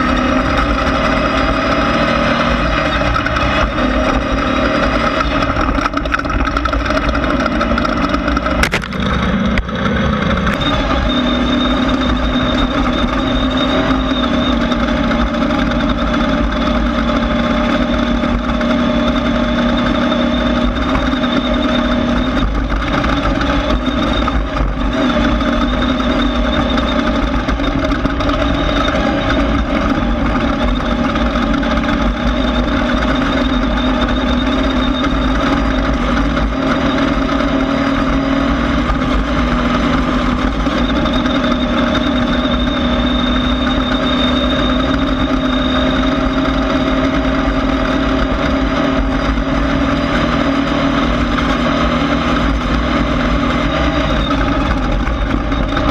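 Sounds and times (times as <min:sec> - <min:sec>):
race car engine running loud: 0:00.0 - 0:55.9.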